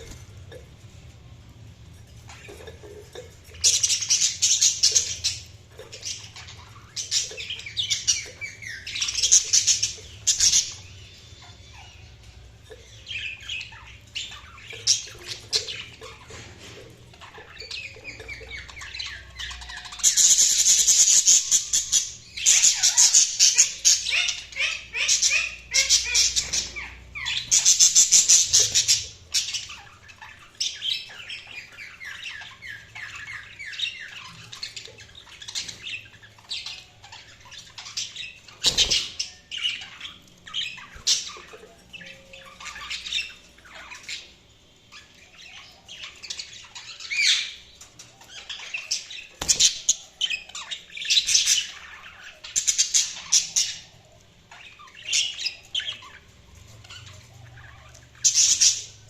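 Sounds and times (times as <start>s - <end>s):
budgerigars chirping and squawking: 0.0s - 59.0s.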